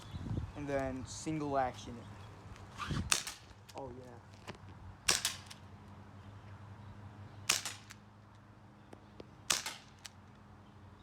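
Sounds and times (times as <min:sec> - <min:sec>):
airsoft pistol shots: 0:03.0 - 0:03.5, 0:05.1 - 0:05.6, 0:07.5 - 0:08.0, 0:09.5 - 0:10.1.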